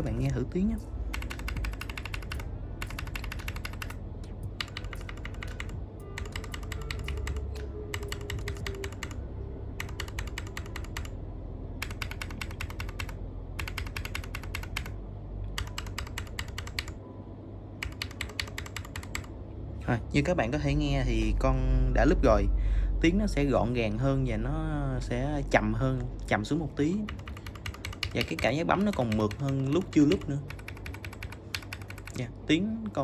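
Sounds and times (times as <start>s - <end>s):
keyboard switches clicking: 1.1s - 9.2s, 9.8s - 11.1s, 11.8s - 14.9s, 15.5s - 17.0s, 17.8s - 19.3s, 27.1s - 32.2s.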